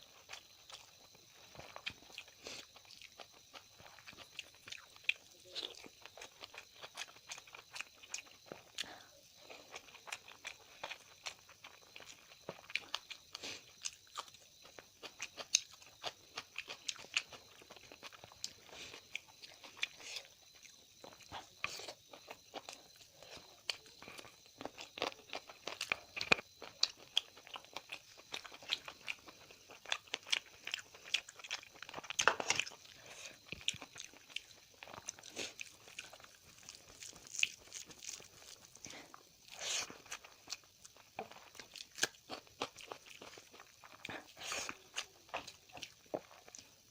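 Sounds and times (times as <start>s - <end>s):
person chewing and crunching: 0.0s - 46.9s.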